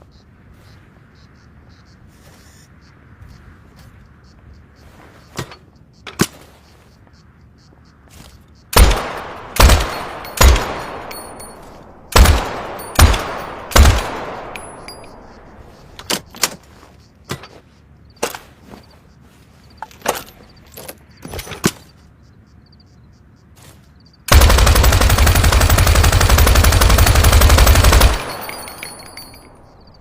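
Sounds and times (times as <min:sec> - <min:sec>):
machine gun shots echoing: 0:08.8 - 0:15.1, 0:24.3 - 0:29.3
quieter shorter gunshots: 0:12.1 - 0:14.7.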